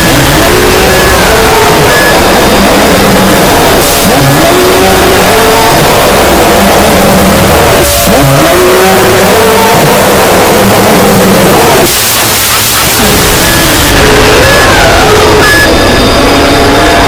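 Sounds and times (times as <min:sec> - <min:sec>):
car engine revving: 0:00.0 - 0:17.0
distorted wall of noise: 0:00.0 - 0:17.0
sliding tones: 0:00.0 - 0:17.0
hissing bursts: 0:11.2 - 0:15.6.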